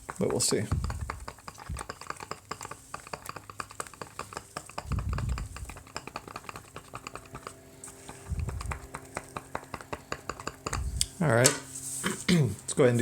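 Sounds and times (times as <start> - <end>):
hands clicking and tapping: 0.0 - 11.6
dull low thumps: 0.7 - 1.8, 4.9 - 5.8, 8.3 - 8.9.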